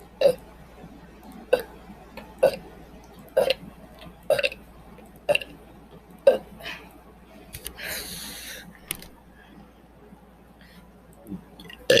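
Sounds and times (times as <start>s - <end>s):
man burping: 11.8s - 12.0s.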